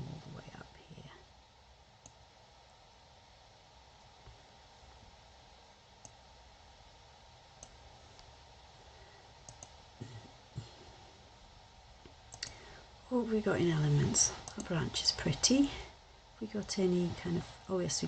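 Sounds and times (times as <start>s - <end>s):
low room hiss: 0.0s - 18.0s
computer mouse clicks: 2.0s - 2.2s, 6.0s - 6.2s, 7.6s - 8.3s, 9.4s - 9.8s, 12.0s - 12.6s, 14.4s - 14.8s.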